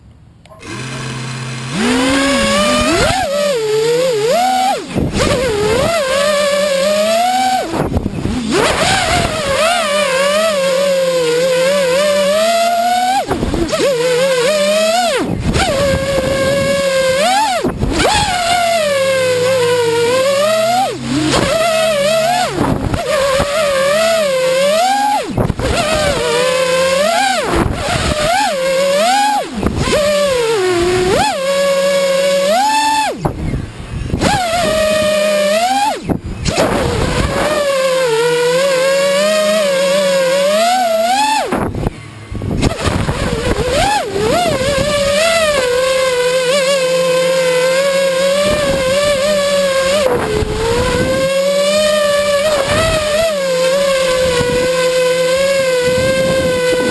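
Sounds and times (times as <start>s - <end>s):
quadcopter motors whining: 0.0s - 56.9s.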